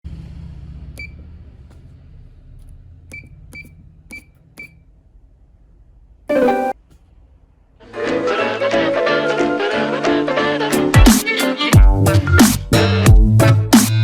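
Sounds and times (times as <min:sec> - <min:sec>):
short electronic beeps: 0:06.3 - 0:06.8.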